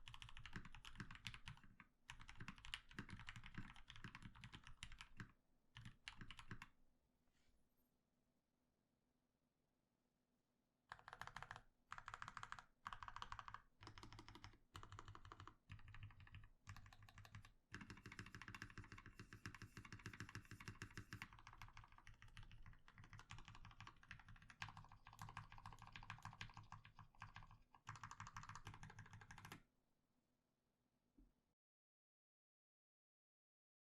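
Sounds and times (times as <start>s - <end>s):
fast mechanical keyboard typing: 0.0s - 6.6s, 10.9s - 29.6s.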